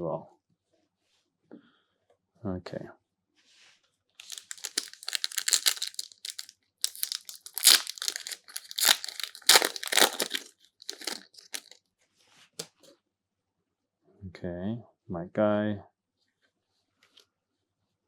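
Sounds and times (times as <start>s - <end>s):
wrapper tearing and crinkling: 4.2s - 11.8s.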